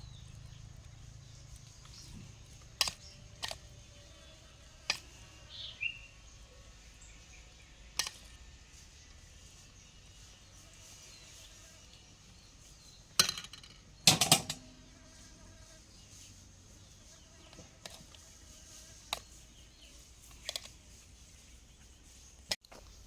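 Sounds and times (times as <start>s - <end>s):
faint insects buzzing: 0.0s - 23.0s
utensils clattering on cookware: 13.2s - 14.9s.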